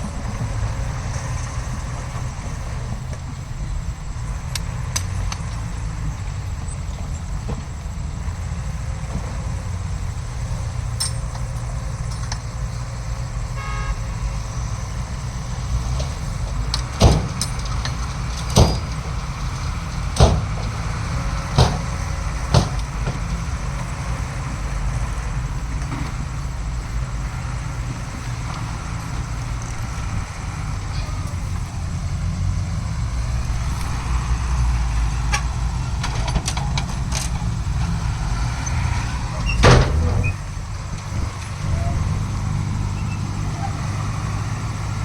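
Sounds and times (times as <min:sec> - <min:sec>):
diesel earthmoving machinery rumbling: 0:00.0 - 0:45.0
sharp loud knocks: 0:16.8 - 0:23.4.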